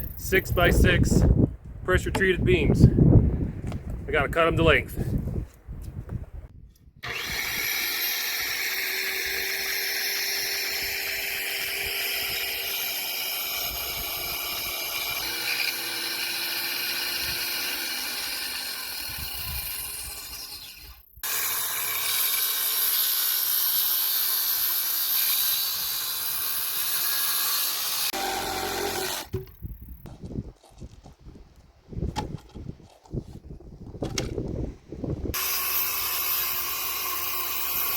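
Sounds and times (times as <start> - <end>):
power saw cutting wood: 7.0 - 29.4, 35.3 - 37.9.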